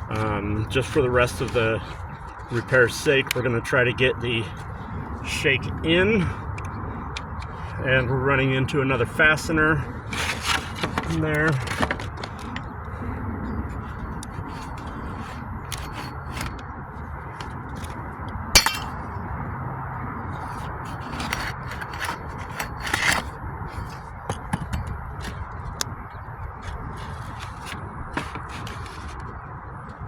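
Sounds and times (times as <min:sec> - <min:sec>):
metal tool scraping wood shakes: 0:21.0 - 0:24.7.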